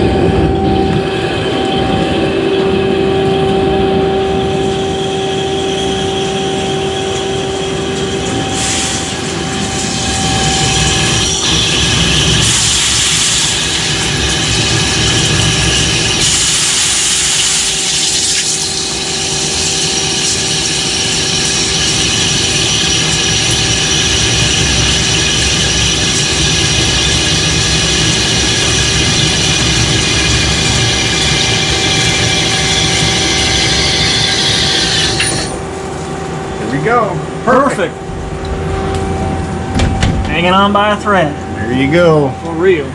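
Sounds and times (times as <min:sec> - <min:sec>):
lathe cutting metal: 0:04.4 - 0:37.6.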